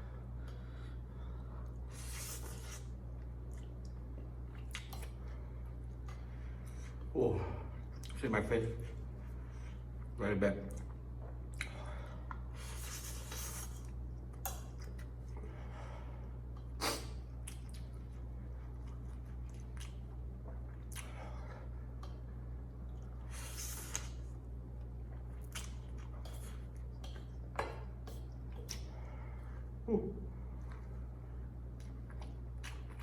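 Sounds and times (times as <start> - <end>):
steady low hum: 0.0 - 33.0
person chewing noodles: 1.6 - 7.1, 16.4 - 29.1, 31.7 - 33.0.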